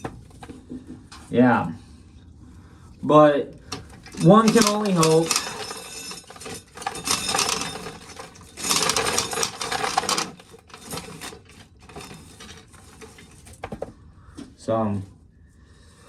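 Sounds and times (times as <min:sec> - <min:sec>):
corn kernels rattling into bucket: 0:03.7 - 0:13.8.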